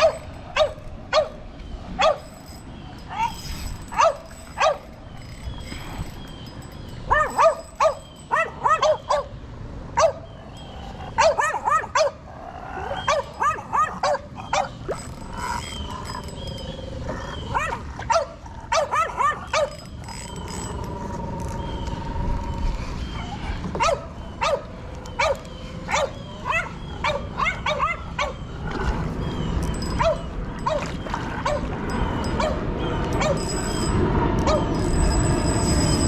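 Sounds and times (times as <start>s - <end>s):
dog yapping: 3.1s - 4.8s, 7.1s - 9.3s, 11.2s - 12.2s, 13.0s - 14.7s, 17.4s - 19.8s, 25.2s - 28.4s.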